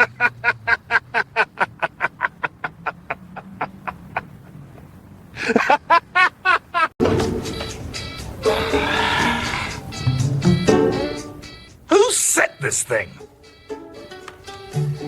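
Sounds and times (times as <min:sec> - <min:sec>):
person laughing: 0:00.0 - 0:04.8, 0:05.4 - 0:06.9.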